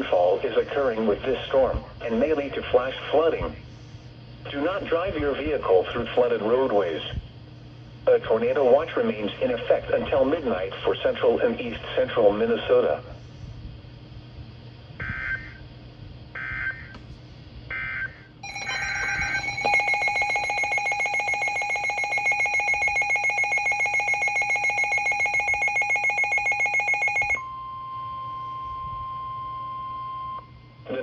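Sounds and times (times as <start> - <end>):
rapidly pulsing electronic alarm: 15.0 - 15.6, 16.3 - 16.9, 17.7 - 30.8
screeching data tone bursts: 17.7 - 27.4
steady single-pitch alert tone: 18.4 - 30.5.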